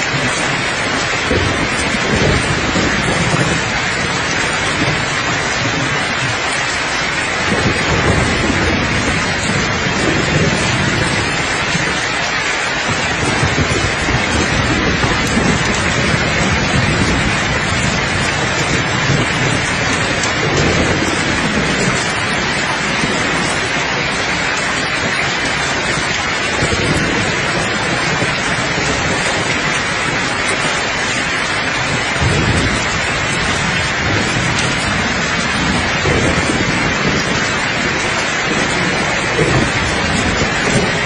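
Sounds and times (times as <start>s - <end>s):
rolls of thunder: 0.0s - 12.0s, 12.8s - 41.0s
dense rain: 0.0s - 41.0s.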